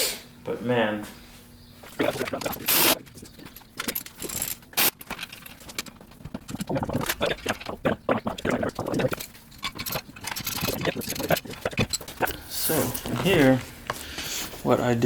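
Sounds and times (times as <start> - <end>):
loud rasping noise: 1.9 - 5.0, 6.2 - 13.2
metal tools clinking and scraping: 2.0 - 7.4, 8.9 - 13.6.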